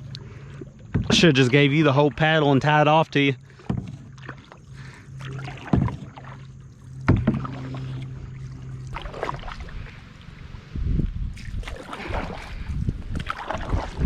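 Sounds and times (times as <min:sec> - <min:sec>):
paddle strokes splashing: 0:00.0 - 0:14.0
steady low hum: 0:00.0 - 0:14.0
paddle knocking against hull: 0:00.8 - 0:02.3, 0:03.4 - 0:08.2, 0:11.4 - 0:14.0.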